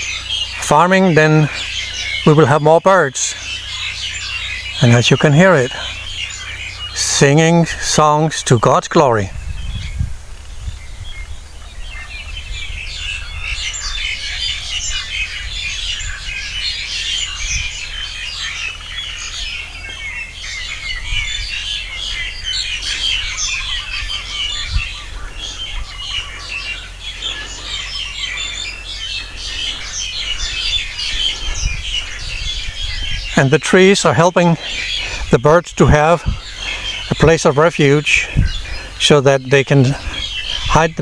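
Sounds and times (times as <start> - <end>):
small birds chirping: 0.0 - 41.0
wind rumble on microphone: 9.0 - 33.6, 34.7 - 39.1, 39.7 - 41.0.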